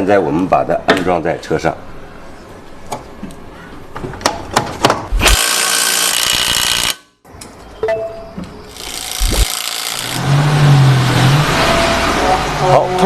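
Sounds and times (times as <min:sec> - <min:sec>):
power tool running: 0:05.2 - 0:07.0, 0:08.7 - 0:10.9.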